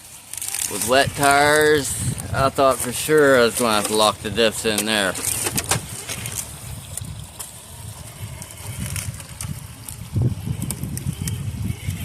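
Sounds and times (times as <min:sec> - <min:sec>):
rc crawler rumble: 0:00.0 - 0:12.0.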